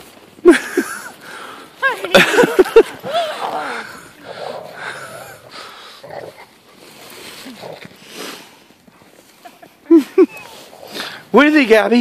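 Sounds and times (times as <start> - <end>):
dogs grunting and breathing: 3.0 - 6.7
dogs yipping and snorting: 8.9 - 11.2.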